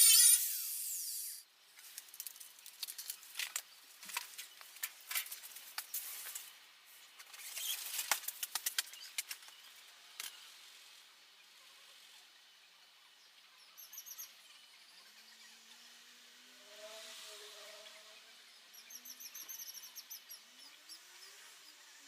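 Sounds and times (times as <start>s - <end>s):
angle grinder spinning down: 0.0s - 1.4s.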